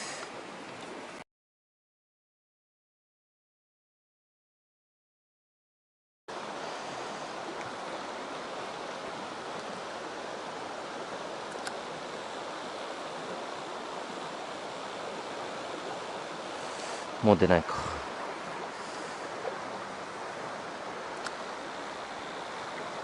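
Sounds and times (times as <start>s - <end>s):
stream water rushing: 0.0s - 1.2s, 6.3s - 23.0s
faint click: 11.5s - 11.8s.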